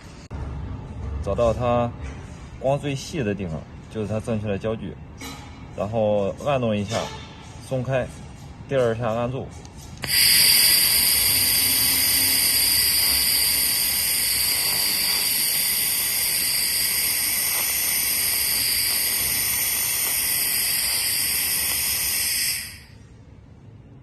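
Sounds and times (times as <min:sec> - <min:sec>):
laser high-pitched hiss: 0:10.0 - 0:23.0.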